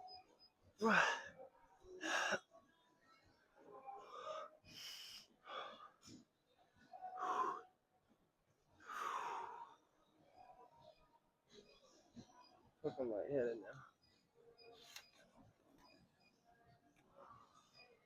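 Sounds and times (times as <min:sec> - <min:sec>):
man gasping and wheezing: 0:00.8 - 0:01.4.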